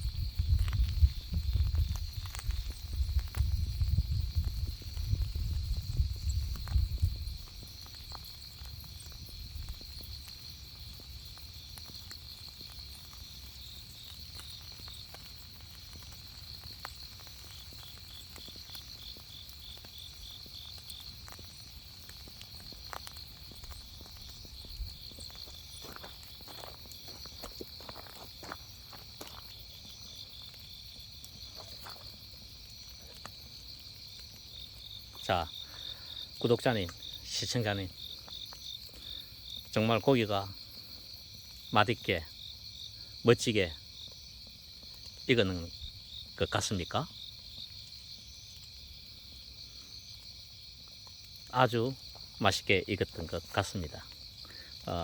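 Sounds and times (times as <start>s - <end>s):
faint clicks and pops: 0.0s - 41.6s
insects trilling: 0.0s - 55.0s.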